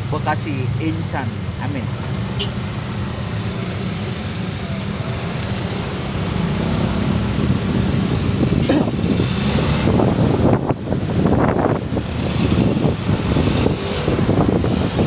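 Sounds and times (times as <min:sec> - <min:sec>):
road and traffic noise: 0:00.0 - 0:15.0.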